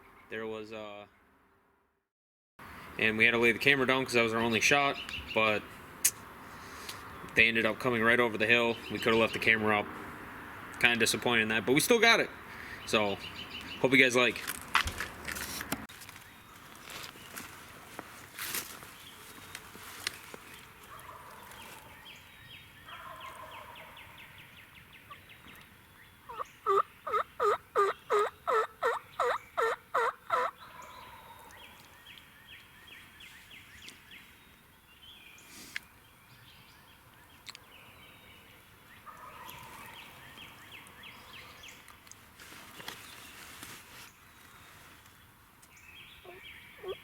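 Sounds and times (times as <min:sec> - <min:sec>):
turkey yelps: 0:22.9 - 0:24.0, 0:26.3 - 0:31.6, 0:46.2 - 0:47.0.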